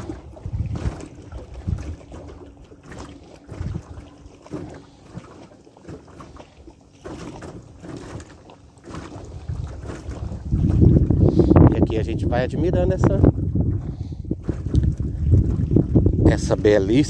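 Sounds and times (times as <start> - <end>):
wind buffeting microphone: 0.0 - 4.9, 8.9 - 17.0.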